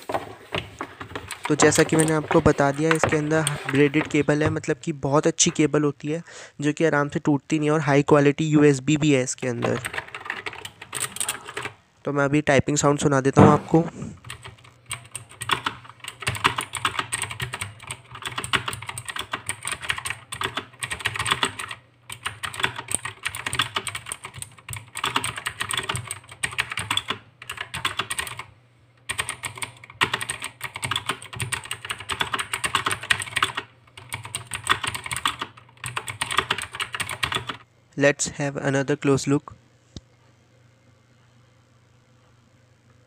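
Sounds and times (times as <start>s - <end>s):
fast typing on mechanical keyboard: 1.1s - 4.6s, 9.6s - 11.8s, 14.2s - 37.6s.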